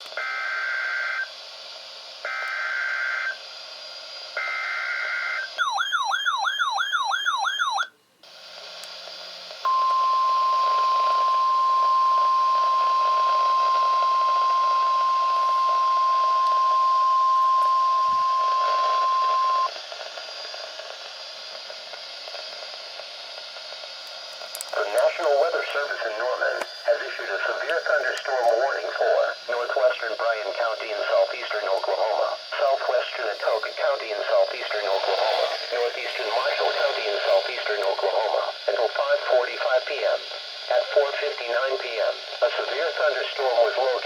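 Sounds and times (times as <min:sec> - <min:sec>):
steady warning alarm tone: 0:02.3 - 0:03.4, 0:04.4 - 0:07.9, 0:09.7 - 0:19.7
fast warbling siren-like tone: 0:05.6 - 0:07.9
faint radio hiss: 0:07.4 - 0:44.0
shrill buzzing data bursts: 0:09.7 - 0:19.7.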